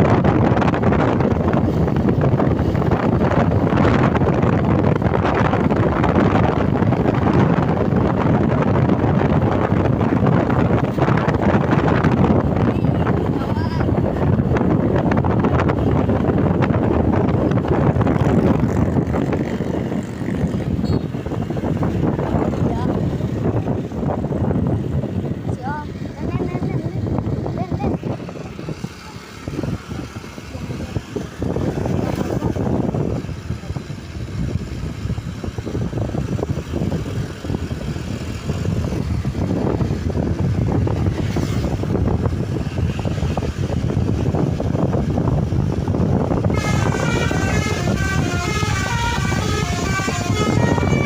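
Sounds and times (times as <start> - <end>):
bus engine: 0.0 - 51.0
road noise: 0.0 - 51.0
musical air horn melody: 46.5 - 51.0.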